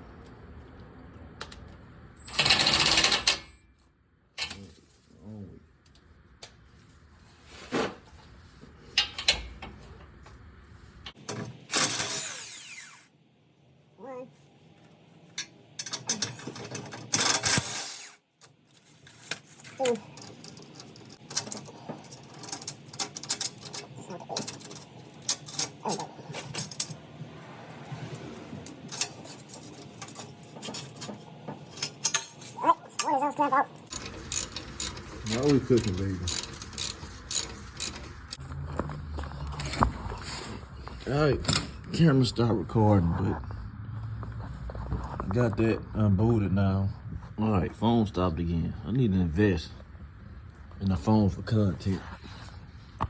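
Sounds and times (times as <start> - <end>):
hand tools clinking on metal: 15.4 - 18.1, 19.1 - 27.0, 28.7 - 38.0
metal knocks and clinks: 28.7 - 35.5
harsh metal rasp: 31.9 - 38.4.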